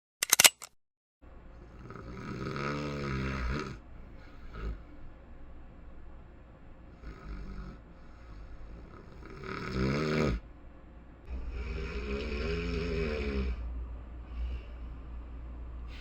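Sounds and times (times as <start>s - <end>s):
person snoring: 1.7s - 4.9s, 7.0s - 10.4s, 11.3s - 13.7s.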